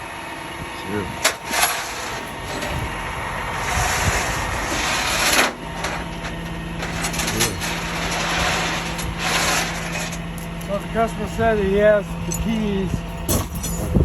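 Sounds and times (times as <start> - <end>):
steady low hum: 0.0 - 14.0
vehicle motor running: 0.0 - 14.0.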